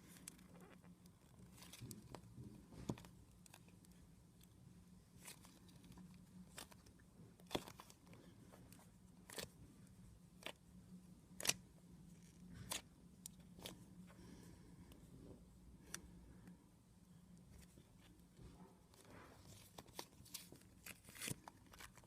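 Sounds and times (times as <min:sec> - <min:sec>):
faint low hum: 0:00.0 - 0:22.0.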